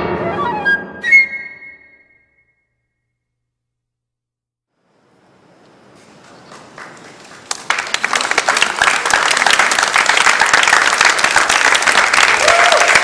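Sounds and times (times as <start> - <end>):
audience applause: 6.4 - 13.0.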